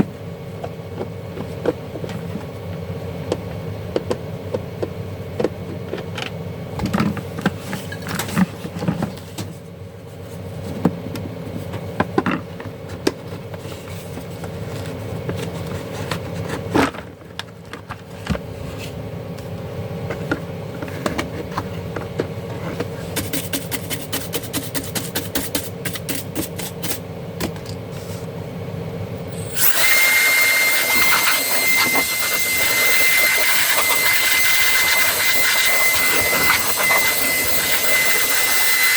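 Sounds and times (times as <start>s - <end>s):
steady low hum: 18.3s - 38.8s
rushing machine noise with whistle: 29.2s - 38.9s.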